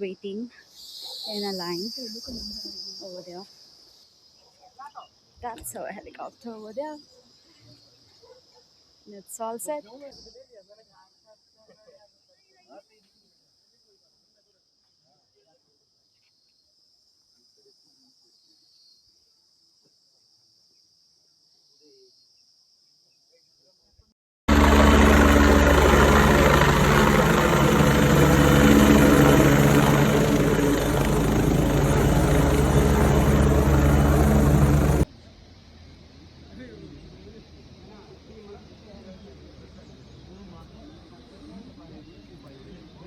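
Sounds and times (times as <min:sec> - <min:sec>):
crickets chirring: 0:00.0 - 0:15.0, 0:24.5 - 0:43.0
helicopter rotor and turbine: 0:24.5 - 0:35.1.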